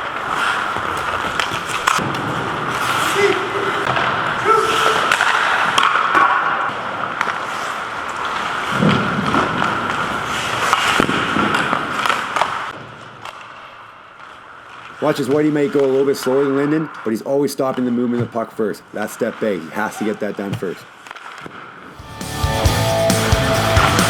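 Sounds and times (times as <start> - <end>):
puck hitting boards: 0.0 - 13.8, 20.5 - 21.9
skates scraping across ice: 0.0 - 17.0
hockey sticks clacking on puck: 0.0 - 21.7.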